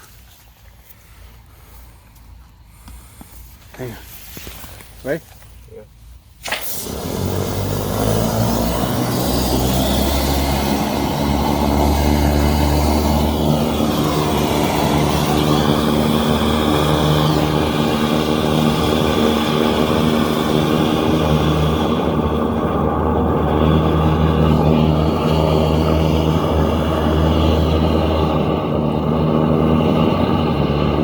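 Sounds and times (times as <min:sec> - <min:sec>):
engine drone: 0:06.3 - 0:31.0
high-pressure water hissing: 0:06.4 - 0:30.6.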